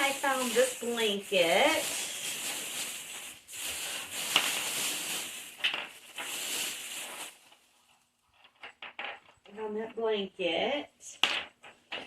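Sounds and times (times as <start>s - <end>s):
blanket rustling: 0.0s - 7.8s.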